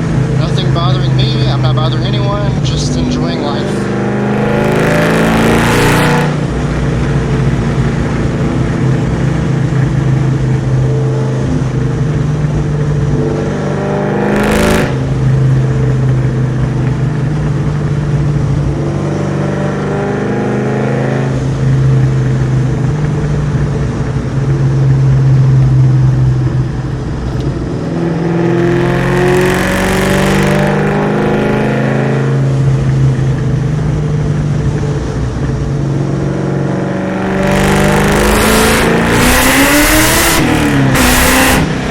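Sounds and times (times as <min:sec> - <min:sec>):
car engine revving: 0:00.0 - 0:41.9
loud rushes of noise: 0:35.1 - 0:41.9.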